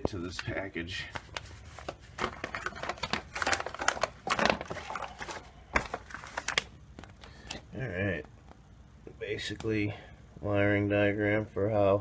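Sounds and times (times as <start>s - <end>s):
paper rustling and crinkling: 1.0s - 7.3s.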